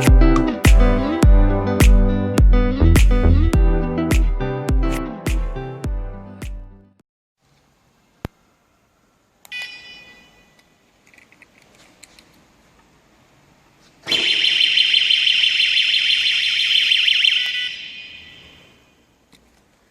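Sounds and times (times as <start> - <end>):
warbling alarm siren: 14.1 - 18.9.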